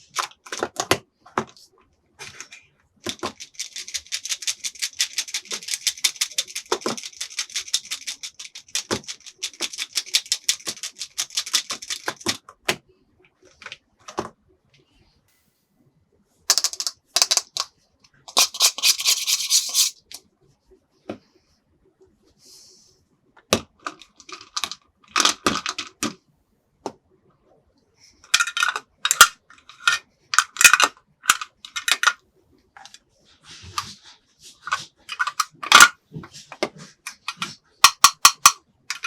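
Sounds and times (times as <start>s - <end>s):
plastic toy pieces clicking: 2.2s - 12.4s, 16.5s - 17.7s, 18.3s - 19.9s, 28.4s - 32.2s, 37.1s - 39.0s.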